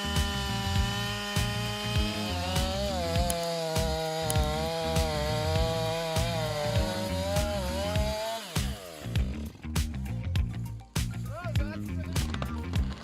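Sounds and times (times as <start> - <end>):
chainsaw cutting at high revs: 0.0 - 9.6
background music with beat: 0.1 - 13.0.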